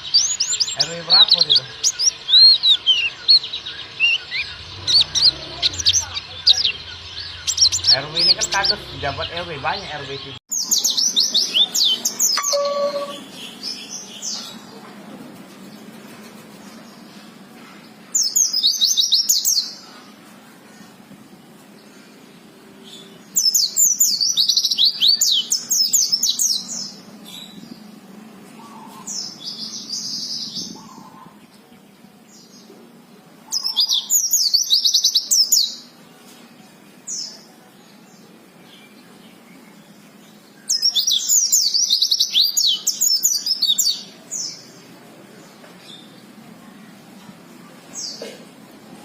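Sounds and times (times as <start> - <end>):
bird twittering: 11.5 - 13.5
bird single calls: 12.3 - 13.4.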